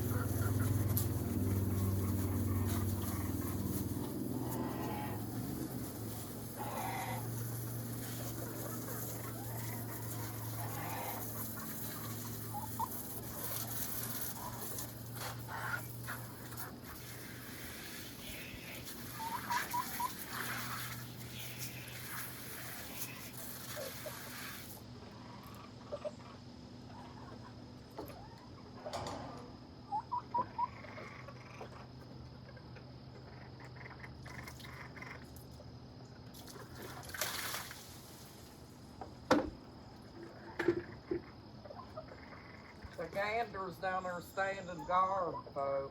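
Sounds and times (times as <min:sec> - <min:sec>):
birds chirping: 0:00.0 - 0:17.2, 0:17.8 - 0:24.3
water running from a hose: 0:00.0 - 0:24.8, 0:36.3 - 0:38.6.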